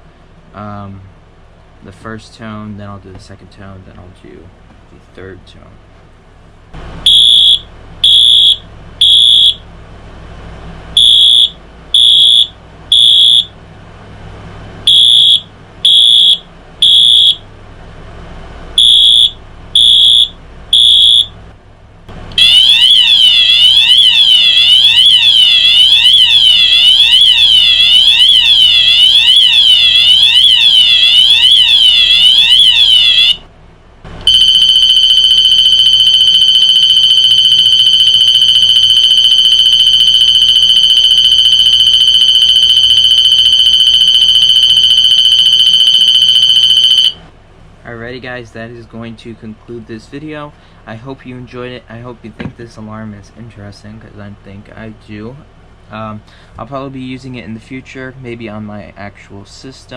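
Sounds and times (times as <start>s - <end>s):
electronic fire alarm horn: 7.0s - 9.6s, 11.0s - 13.5s, 14.9s - 17.4s, 18.8s - 21.4s, 22.4s - 33.4s, 34.2s - 47.2s.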